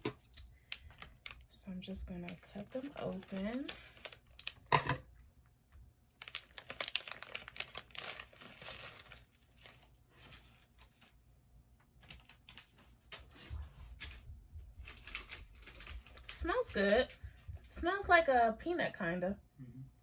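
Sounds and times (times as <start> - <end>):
plastic packaging crinkling: 0.0 - 5.1, 6.1 - 11.2, 12.0 - 13.2, 14.8 - 17.2
scissors snipping plastic bag: 2.2 - 4.9, 6.2 - 9.2, 14.8 - 17.1.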